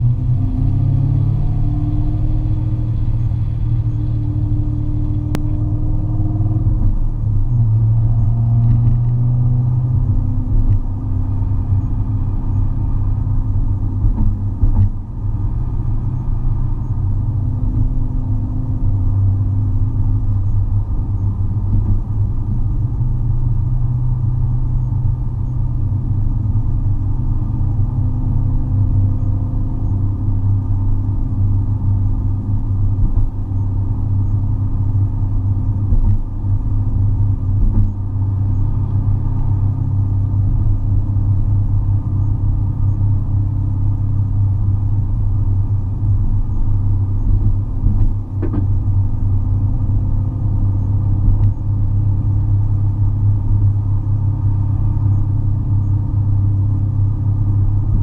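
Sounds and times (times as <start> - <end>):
car engine and road rumble: 0.0 - 58.0
suspension clicks: 8.2 - 9.4, 35.7 - 39.6, 47.0 - 52.4.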